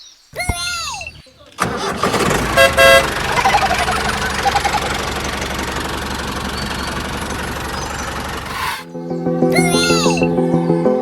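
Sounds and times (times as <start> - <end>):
tractor engine knocking: 1.0 - 8.8.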